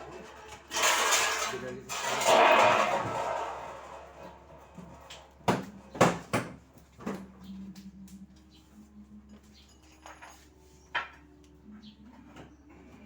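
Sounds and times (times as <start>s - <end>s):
loud scraping rush: 0.7s - 4.6s.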